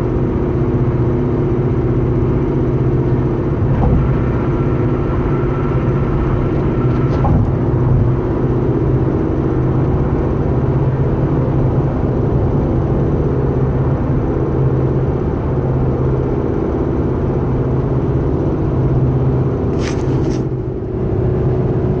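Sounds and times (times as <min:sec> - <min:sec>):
car engine humming: 0:00.0 - 0:13.2.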